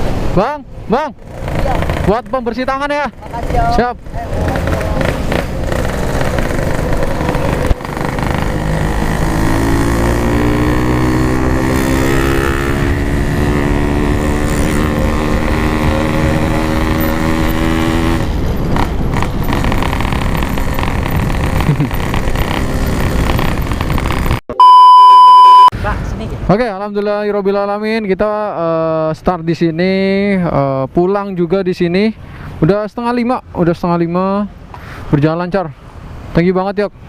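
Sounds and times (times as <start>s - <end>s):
motorcycle engine: 1.0s - 24.4s.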